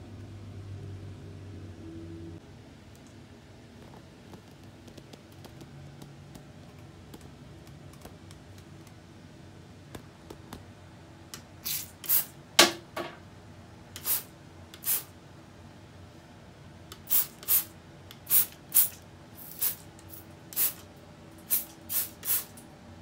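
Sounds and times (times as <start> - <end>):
aerosol can spraying: 11.6 - 12.3, 14.0 - 15.1, 17.0 - 17.7, 18.3 - 20.8, 21.4 - 22.6.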